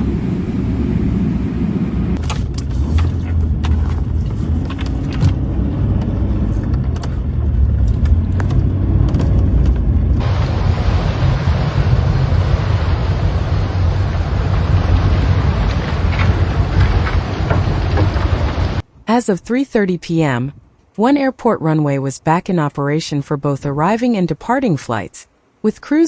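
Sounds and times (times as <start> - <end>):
car driving low rumble: 0.0 - 18.8
rush of wind noise: 0.0 - 18.8.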